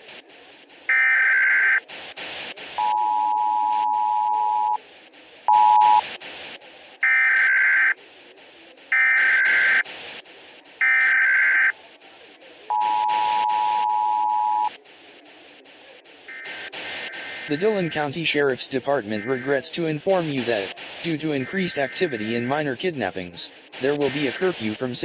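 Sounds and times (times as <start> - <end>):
faint clicking static: 0.0 - 25.0
two-tone attention signal: 2.8 - 4.8, 5.5 - 6.0, 12.7 - 14.7.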